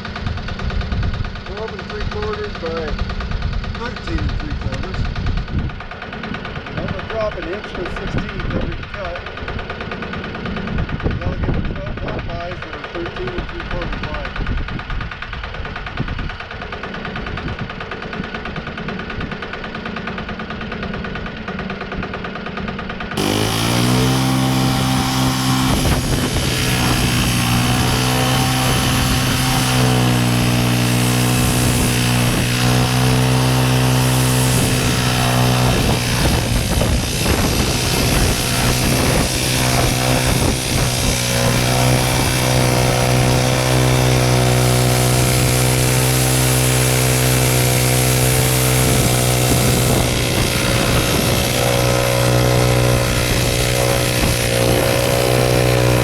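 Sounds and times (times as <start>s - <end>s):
band sawmill running: 0.0s - 56.0s
band blade cutting log: 23.2s - 56.0s.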